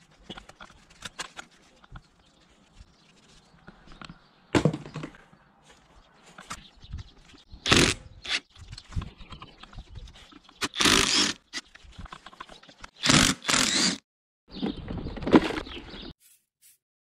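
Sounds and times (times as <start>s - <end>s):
short scraping rasps: 10.6s - 14.0s.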